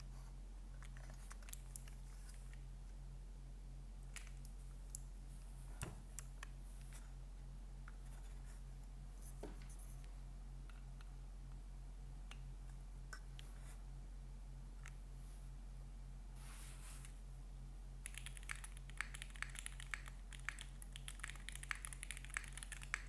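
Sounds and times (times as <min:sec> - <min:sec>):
low electrical hum: 0:00.0 - 0:23.0
mechanical keyboard keystrokes: 0:18.0 - 0:23.0.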